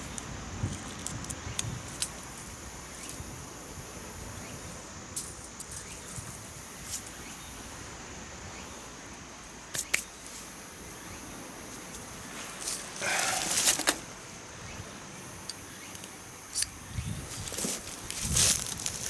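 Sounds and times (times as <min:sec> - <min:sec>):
outdoor background hiss: 0:00.0 - 0:19.0.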